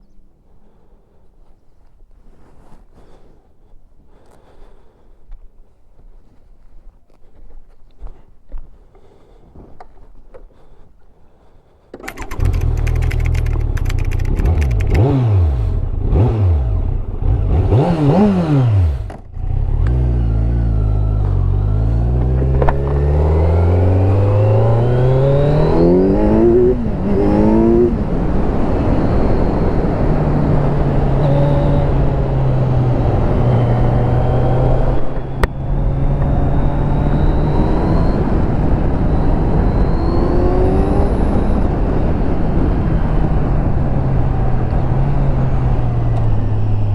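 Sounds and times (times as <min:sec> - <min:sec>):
sharp tick: 0:12.0 - 0:15.2
motorcycle engine revving and accelerating: 0:12.0 - 0:46.9.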